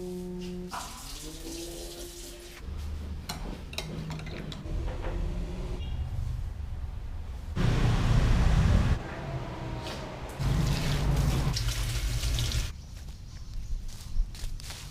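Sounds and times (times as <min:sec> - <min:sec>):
water running from tap: 0:00.7 - 0:02.6, 0:10.4 - 0:12.7.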